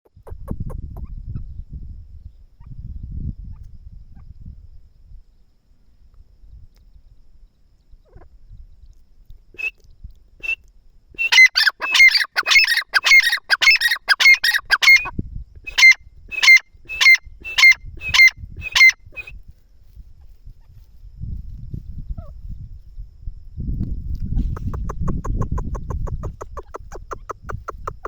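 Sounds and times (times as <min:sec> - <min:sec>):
francolin calling: 0:09.6 - 0:19.4.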